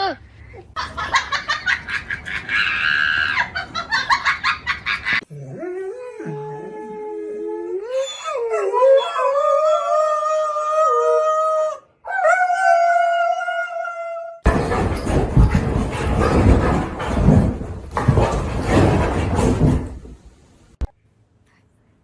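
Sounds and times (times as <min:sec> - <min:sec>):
dog howling: 0:05.8 - 0:14.5.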